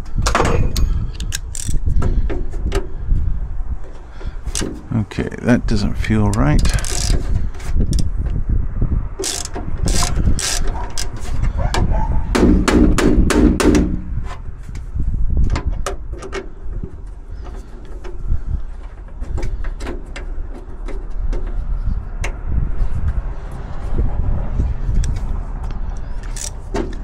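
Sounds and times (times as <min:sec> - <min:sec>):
metal parts clicking and clunking: 0:00.0 - 0:03.0, 0:03.9 - 0:04.9, 0:06.3 - 0:08.1, 0:09.2 - 0:11.6, 0:13.7 - 0:22.5, 0:24.9 - 0:27.0.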